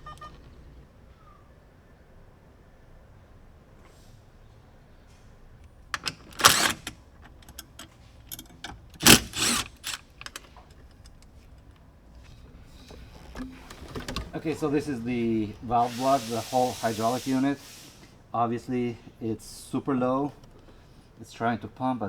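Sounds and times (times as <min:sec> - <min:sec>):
tools and parts clattering: 0:05.9 - 0:11.8, 0:12.8 - 0:14.7.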